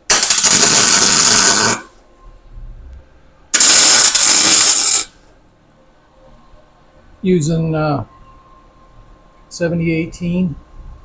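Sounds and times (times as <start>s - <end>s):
arc welding crackling: 0.0s - 2.0s, 3.5s - 5.2s.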